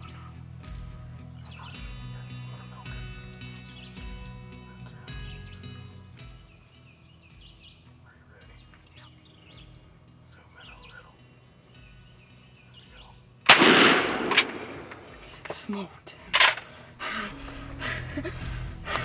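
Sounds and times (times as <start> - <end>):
songbirds chirping faintly: 0.0 - 19.0
sharp click: 13.5 - 15.6, 16.4 - 16.7
shotgun blast: 13.5 - 15.6.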